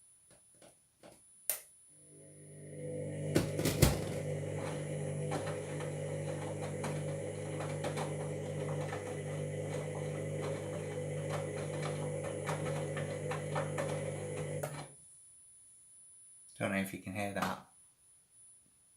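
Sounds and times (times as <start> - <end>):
washing machine motor hum: 2.0 - 14.9.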